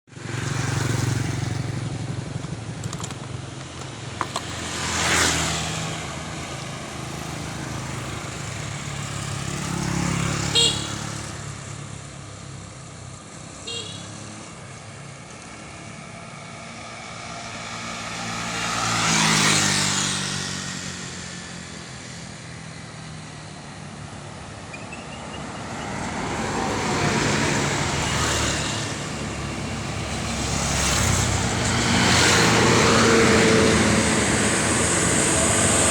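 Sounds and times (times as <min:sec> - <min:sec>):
large vehicles passing by: 0:23.7 - 0:35.9.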